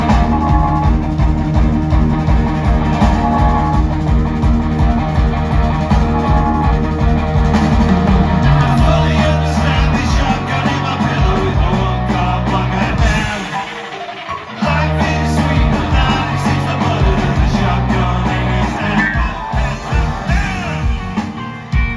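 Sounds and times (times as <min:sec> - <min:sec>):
drum beat: 0:00.0 - 0:13.9, 0:14.5 - 0:21.9
electric guitar: 0:00.0 - 0:21.9.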